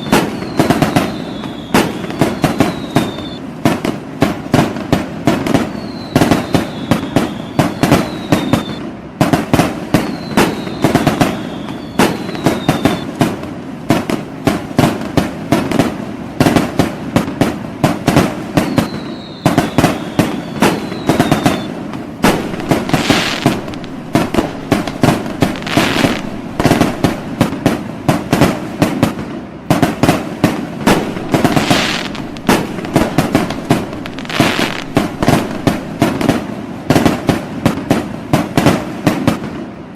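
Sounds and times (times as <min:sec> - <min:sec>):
short high falling whistles: 0:00.0 - 0:03.4, 0:05.6 - 0:08.8, 0:10.0 - 0:13.2, 0:18.6 - 0:27.6, 0:30.9 - 0:36.3
fireworks bangs and crackles: 0:00.0 - 0:39.9.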